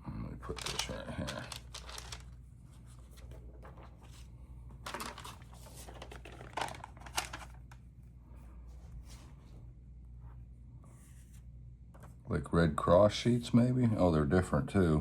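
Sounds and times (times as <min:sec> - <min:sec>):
paper rustling: 0:00.4 - 0:07.9.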